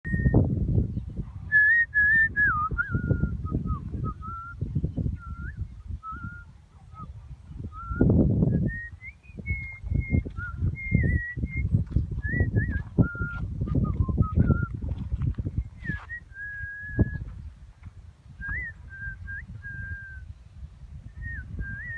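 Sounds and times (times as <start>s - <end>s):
whistled notes: 1.6s - 14.8s, 15.8s - 17.3s, 18.4s - 20.3s, 21.2s - 21.9s.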